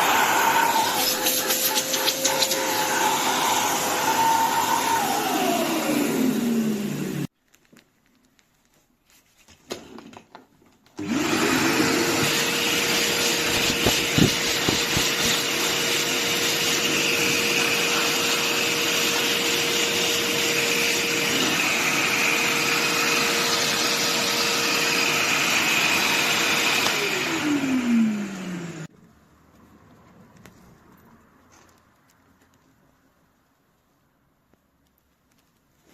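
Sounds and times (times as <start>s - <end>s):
wet dry vacuum cleaner whine: 0.0s - 7.3s, 11.0s - 28.9s.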